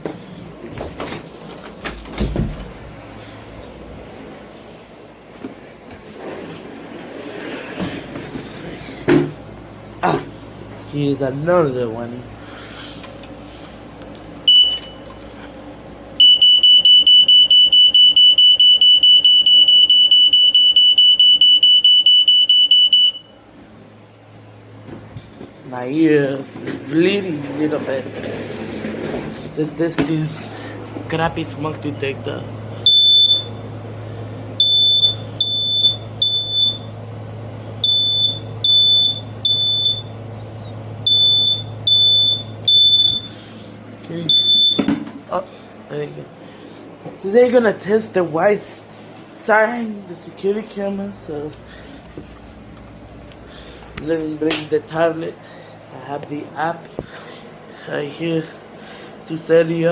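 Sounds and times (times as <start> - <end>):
smoke alarm chirp: 14.5 - 15.1, 16.2 - 23.4, 32.8 - 33.7, 34.6 - 37.0, 37.8 - 43.5, 44.3 - 45.0
smoke alarm rapid loud beeping: 14.5 - 15.1, 16.2 - 23.4, 32.8 - 33.7, 34.6 - 37.0, 37.8 - 40.2, 41.0 - 43.4, 44.3 - 44.9.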